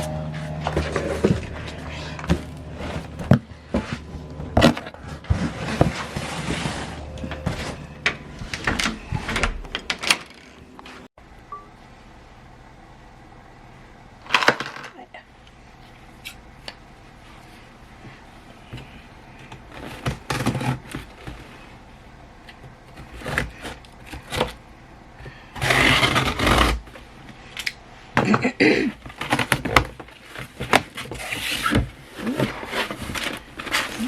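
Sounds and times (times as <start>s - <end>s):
objects knocking and scraping: 0.0s - 11.1s.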